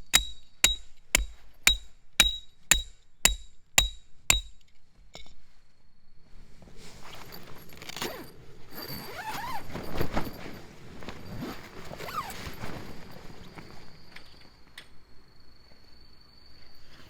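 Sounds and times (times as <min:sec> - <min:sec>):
tent fabric rustling: 0:08.8 - 0:13.5.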